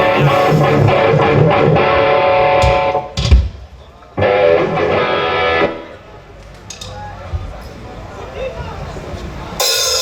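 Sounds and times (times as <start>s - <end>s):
electric guitar chords: 0.0s - 3.2s, 4.2s - 6.0s.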